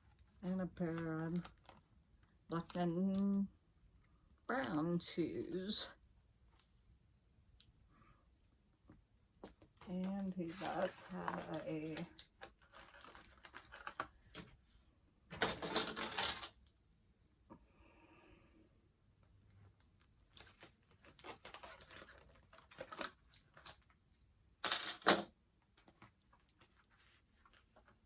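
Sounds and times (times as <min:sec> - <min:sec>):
packaging rustling: 0:00.9 - 0:01.8, 0:09.4 - 0:14.6, 0:19.9 - 0:24.0.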